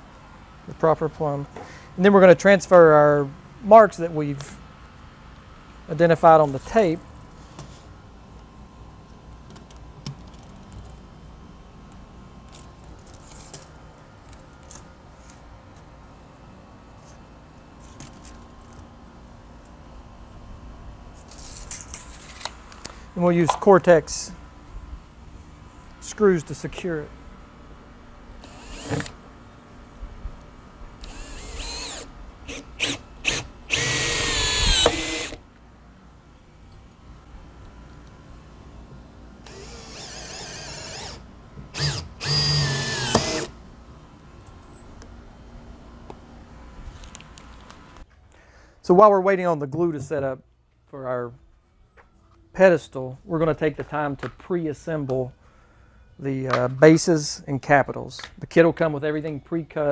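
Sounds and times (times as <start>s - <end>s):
low room hum: 0.0s - 59.9s
power drill driving screws: 28.4s - 29.2s, 31.0s - 35.4s, 39.4s - 41.2s, 41.8s - 43.5s.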